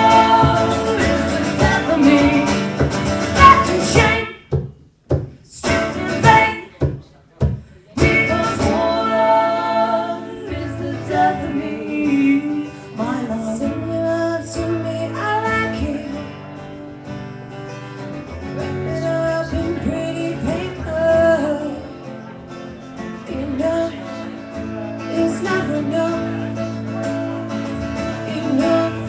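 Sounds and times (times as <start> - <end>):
guitar playing: 0.0 - 4.5, 5.6 - 6.8, 8.0 - 29.0
woman singing: 0.0 - 4.6, 5.5 - 6.8, 8.0 - 16.3, 18.8 - 21.9, 23.3 - 24.2, 25.1 - 26.6, 28.2 - 29.0.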